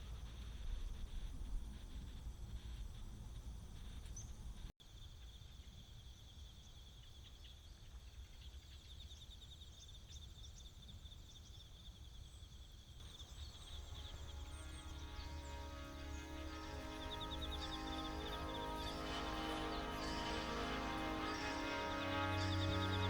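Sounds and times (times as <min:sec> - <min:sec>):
insects chirring: 0:13.0 - 0:23.0
music: 0:13.0 - 0:23.0
low outdoor rumble: 0:13.1 - 0:23.0.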